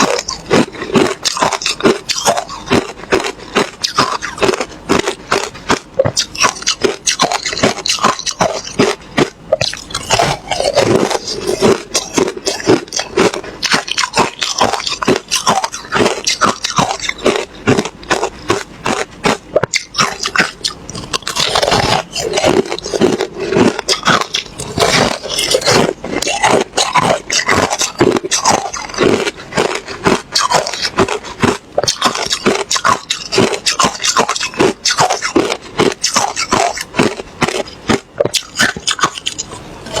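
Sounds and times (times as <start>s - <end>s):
person chewing ice: 0.0s - 40.0s.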